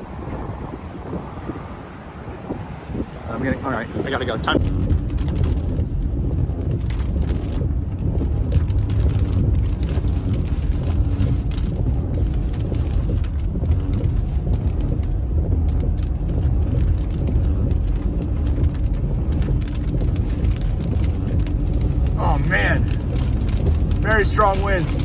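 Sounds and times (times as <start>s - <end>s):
rain ticking on car body: 0.0s - 25.0s
road rumble inside vehicle: 0.0s - 25.0s
strong wind noise: 0.0s - 25.0s.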